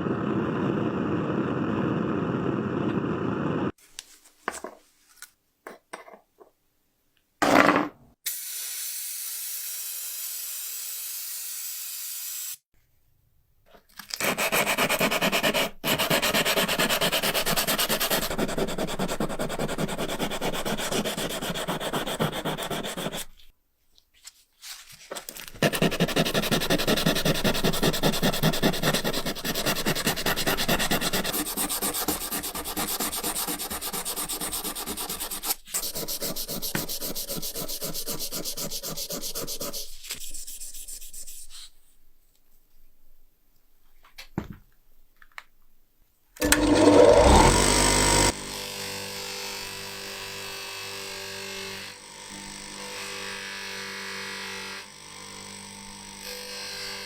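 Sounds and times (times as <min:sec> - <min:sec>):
hand sanding metal: 0:14.2 - 0:23.3, 0:25.6 - 0:41.7.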